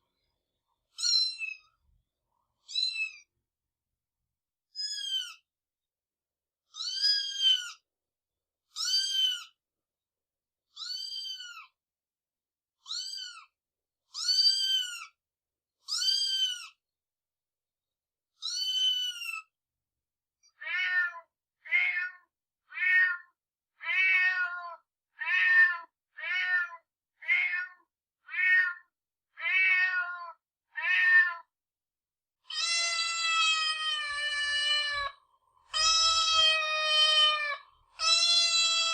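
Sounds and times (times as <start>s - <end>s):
cat meowing high-pitched: 0.9s - 1.7s, 2.6s - 3.3s, 4.8s - 5.4s, 6.7s - 7.8s, 8.7s - 9.6s, 10.7s - 11.7s, 12.8s - 13.5s, 14.1s - 15.2s, 15.9s - 16.8s, 18.4s - 19.5s, 20.4s - 31.6s, 32.4s - 38.9s
lower-pitched cat meowing: 20.5s - 31.5s, 32.4s - 38.9s.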